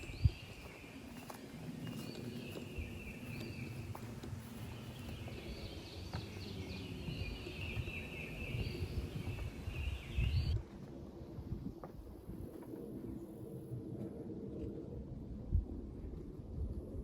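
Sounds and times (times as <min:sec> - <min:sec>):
birds calling: 0:00.0 - 0:10.6
low rumbling noise: 0:00.0 - 0:17.0.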